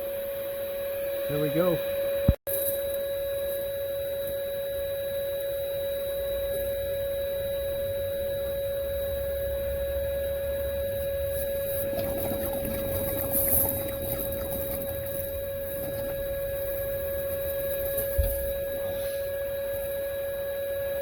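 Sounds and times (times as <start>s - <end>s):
vacuum whining: 7.2s - 21.0s.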